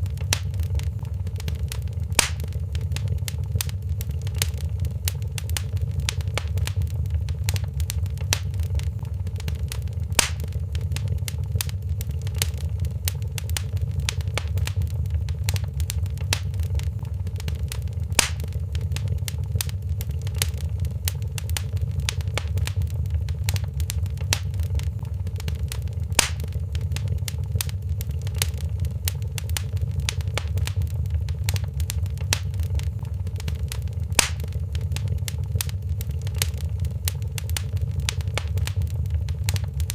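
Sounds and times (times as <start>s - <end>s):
fire crackling: 0.0s - 39.9s
steady low rumble: 0.0s - 39.9s
loud fire pop: 0.3s - 3.7s, 10.1s - 11.7s, 18.1s - 19.7s, 26.1s - 27.7s, 34.1s - 35.7s.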